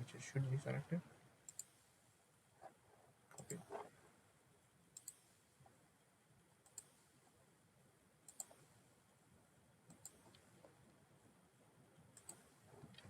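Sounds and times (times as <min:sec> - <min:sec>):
computer mouse clicks: 0:01.4 - 0:01.9, 0:03.3 - 0:03.9, 0:04.9 - 0:05.4, 0:06.6 - 0:07.1, 0:08.2 - 0:08.7, 0:09.9 - 0:10.7, 0:12.1 - 0:13.0.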